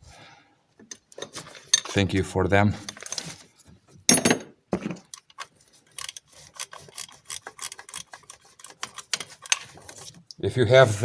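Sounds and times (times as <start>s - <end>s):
ratchet wrench clicking: 6.0s - 9.6s.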